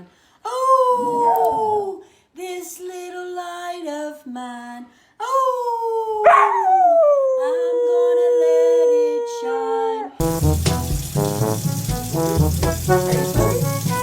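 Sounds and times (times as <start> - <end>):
dog howling: 0.8 - 2.0, 6.2 - 10.2.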